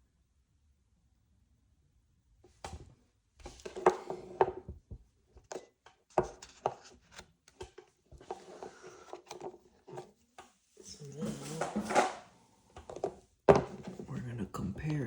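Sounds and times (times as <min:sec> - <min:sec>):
rustling: 0:08.2 - 0:14.2.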